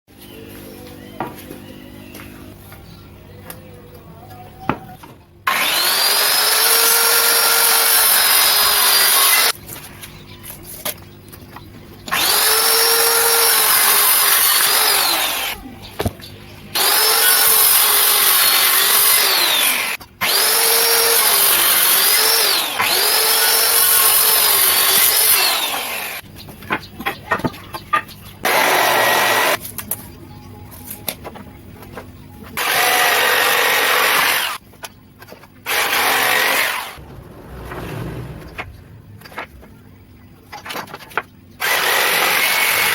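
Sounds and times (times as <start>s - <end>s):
circular saw cutting wood: 5.5s - 9.6s, 12.1s - 15.7s, 16.7s - 26.2s, 28.4s - 29.6s, 32.6s - 34.6s, 35.7s - 38.8s, 41.6s - 42.9s.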